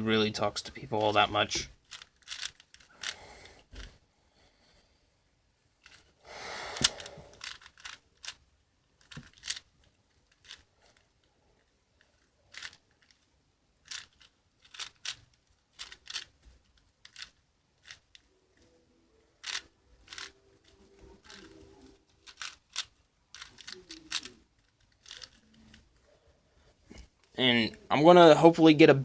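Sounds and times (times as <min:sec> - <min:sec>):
puzzle cube clicking and scraping: 0:00.9 - 0:04.0, 0:05.8 - 0:26.1.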